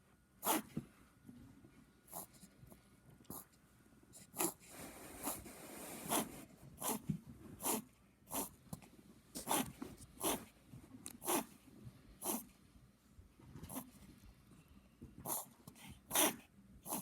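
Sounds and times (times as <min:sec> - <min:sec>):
puppy reverse sneezing: 0:00.4 - 0:00.7, 0:16.1 - 0:17.0.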